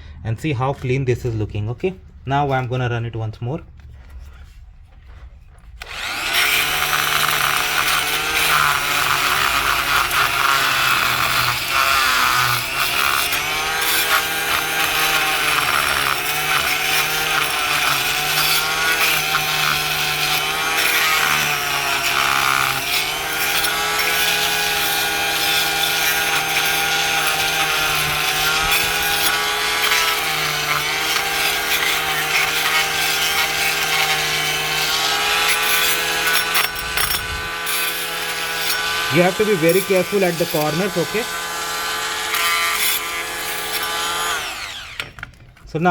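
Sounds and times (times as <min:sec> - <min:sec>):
blade scraping concrete: 0:04.2 - 0:45.3
oscillating multi-tool whining: 0:05.8 - 0:45.2.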